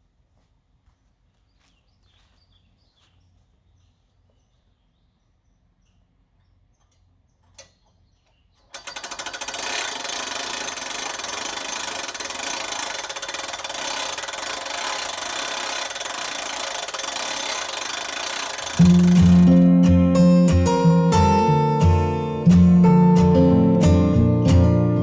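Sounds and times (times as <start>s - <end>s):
power tool fast rattle: 8.6s - 20.0s.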